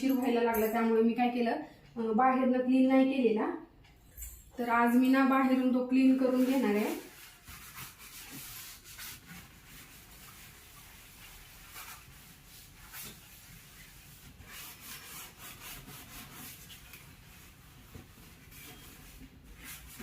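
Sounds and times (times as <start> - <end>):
scrubbing rubbing strokes: 6.1 - 20.0.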